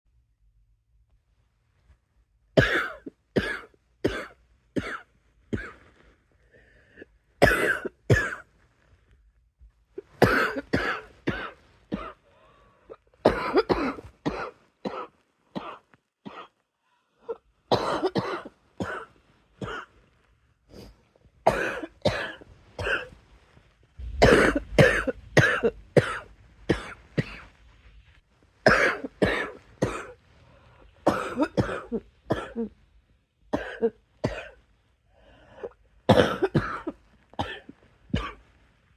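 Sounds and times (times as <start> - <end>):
person coughing: 2.6 - 5.8, 7.0 - 8.4, 10.2 - 12.2, 13.3 - 16.6, 17.7 - 19.9, 21.5 - 23.1, 24.2 - 27.4, 28.7 - 30.2, 31.1 - 32.7, 33.6 - 34.6, 35.6 - 38.4.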